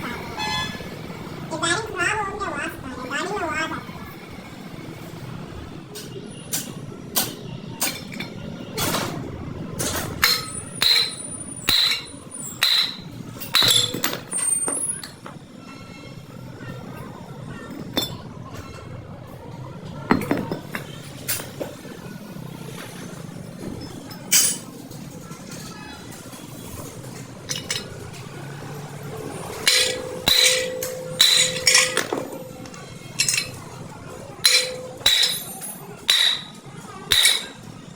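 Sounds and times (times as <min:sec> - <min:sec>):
steel parts clanking together: 0:09.8 - 0:15.4, 0:24.1 - 0:24.8, 0:27.4 - 0:28.3, 0:29.2 - 0:37.8
metal ringing tone: 0:10.2 - 0:14.1, 0:29.2 - 0:37.7
hammer striking metal: 0:10.2 - 0:14.2, 0:29.5 - 0:33.7, 0:34.4 - 0:37.7.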